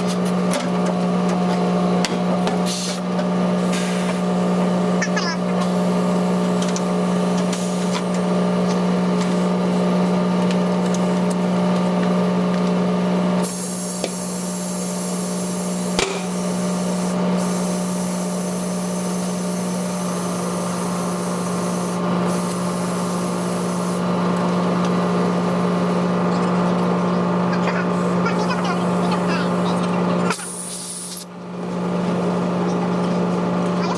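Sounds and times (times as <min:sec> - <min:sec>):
steady machine hum: 0:00.0 - 0:33.9
sharp click: 0:16.0 - 0:16.3.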